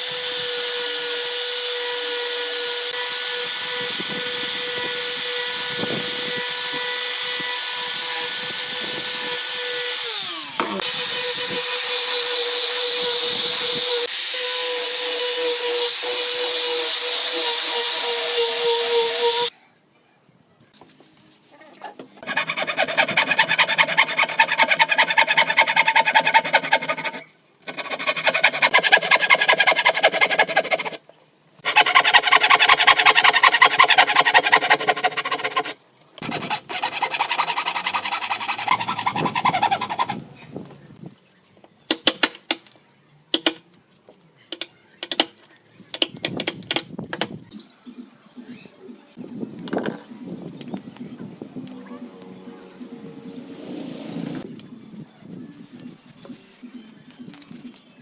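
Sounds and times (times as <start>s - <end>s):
wood being sanded: 0.0s - 19.5s, 22.2s - 31.0s, 31.6s - 40.2s.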